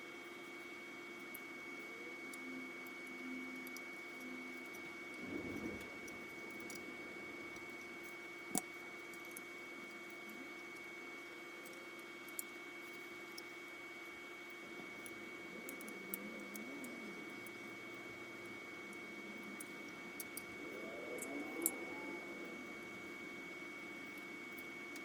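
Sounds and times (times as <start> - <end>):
high electrical whine: 1.6 - 25.0
low hum: 2.0 - 8.0, 14.6 - 25.0.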